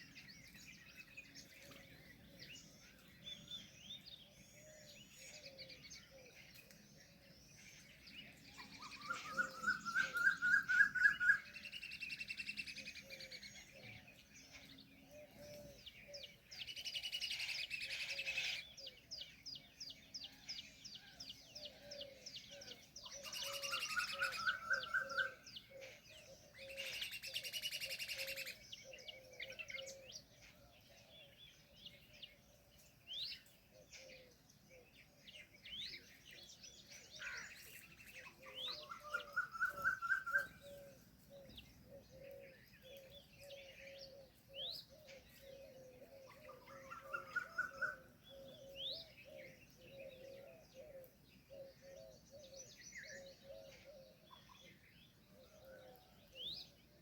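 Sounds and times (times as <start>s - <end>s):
upward-sweeping bird whistles: 8.7s - 12.4s, 23.2s - 25.4s, 38.5s - 40.8s.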